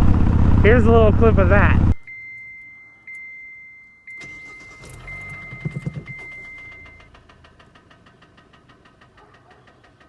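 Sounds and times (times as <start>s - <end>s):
car warning chime: 1.9s - 7.6s
car engine cranking and running: 4.1s - 10.0s
faint engine knock: 4.8s - 10.0s.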